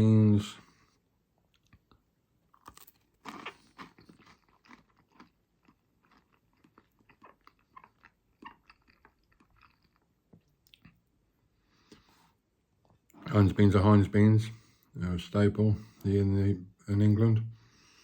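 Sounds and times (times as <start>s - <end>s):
close-up chewing: 1.5s - 11.1s.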